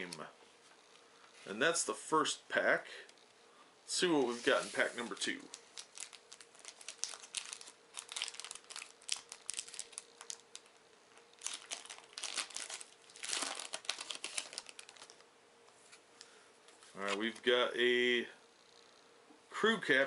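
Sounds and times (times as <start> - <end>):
wrapper crinkling and tearing: 4.6 - 15.2.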